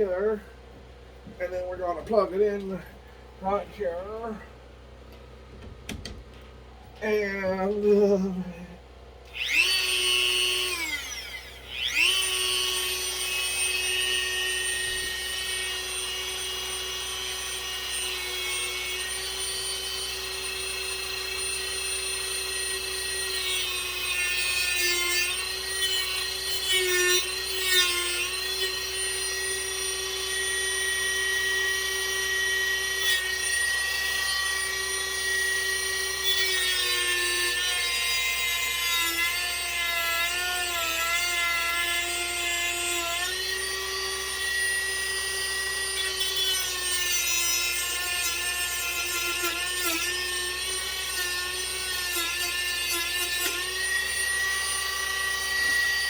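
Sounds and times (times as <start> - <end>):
power tool cutting wood: 7.0 - 56.0.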